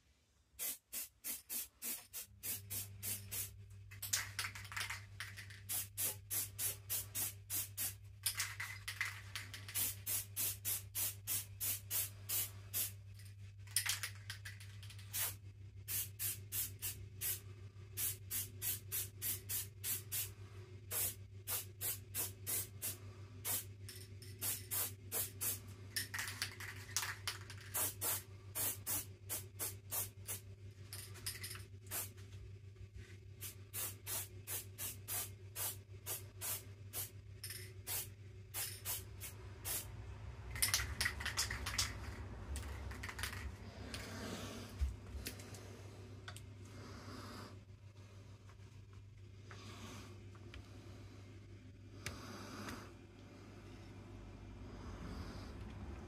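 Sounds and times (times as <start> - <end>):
steady low hum: 0.0 - 56.0
spray can spraying in bursts: 0.6 - 3.6, 5.3 - 8.0, 9.4 - 12.9, 15.1 - 17.4, 20.9 - 23.7, 24.4 - 25.6, 27.6 - 30.4, 33.4 - 37.1, 37.9 - 39.9.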